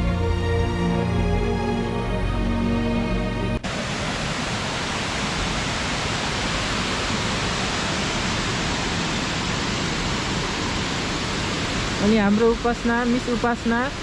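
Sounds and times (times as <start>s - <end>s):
background music: 0.0s - 3.6s
waterfall rushing: 0.0s - 14.0s.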